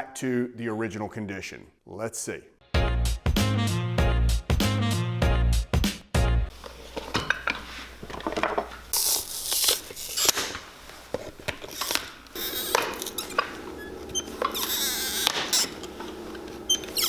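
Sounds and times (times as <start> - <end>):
tools scraping and tearing leather: 6.5 - 17.0.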